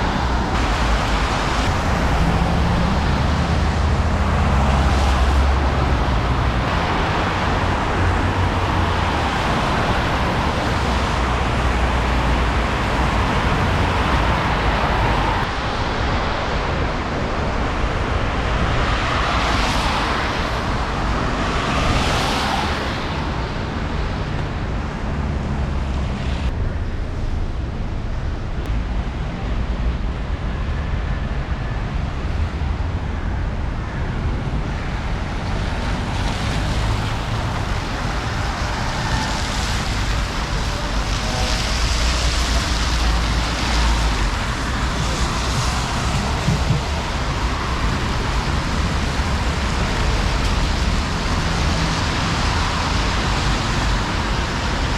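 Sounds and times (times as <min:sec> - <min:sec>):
tyre hiss of passing vehicles: 0:00.0 - 0:16.8, 0:34.9 - 0:54.9
steady traffic: 0:00.0 - 0:54.9
wind buffeting microphone: 0:00.0 - 0:54.9.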